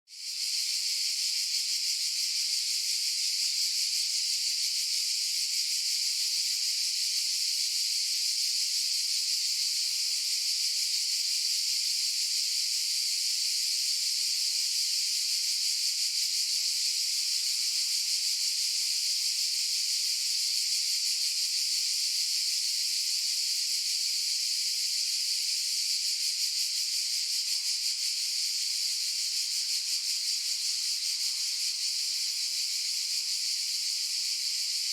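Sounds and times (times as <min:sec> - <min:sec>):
cicadas buzzing: 0:25.8 - 0:34.9.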